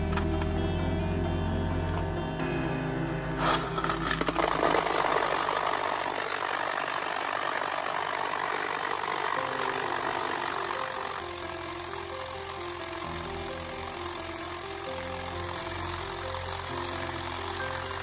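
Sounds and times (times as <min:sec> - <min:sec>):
faint background music: 0:00.0 - 0:06.1
rushing hissing mechanical noise: 0:03.1 - 0:18.0.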